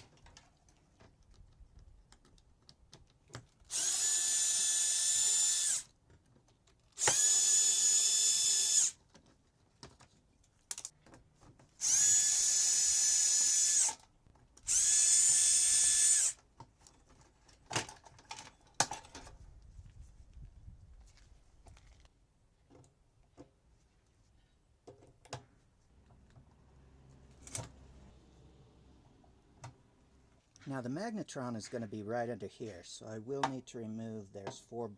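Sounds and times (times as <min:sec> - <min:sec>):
power drill whining: 0:03.7 - 0:05.9, 0:07.0 - 0:09.0, 0:11.8 - 0:14.0, 0:14.6 - 0:16.4.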